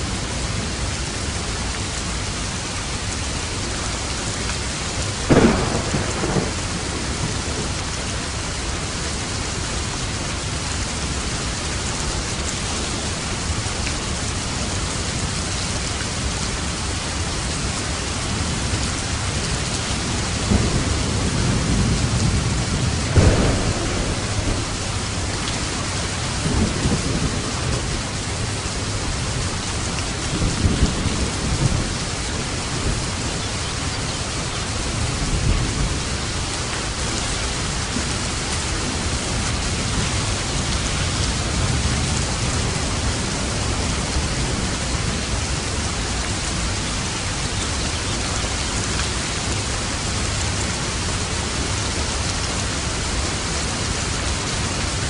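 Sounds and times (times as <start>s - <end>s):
heavy rain: 0.0s - 55.0s
thunder rumbling and cracking: 5.2s - 9.4s, 17.8s - 46.8s.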